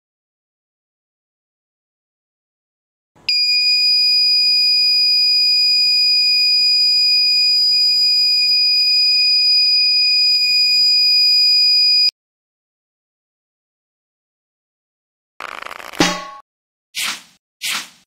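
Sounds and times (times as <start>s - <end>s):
fire alarm buzzer tone: 3.3s - 12.1s.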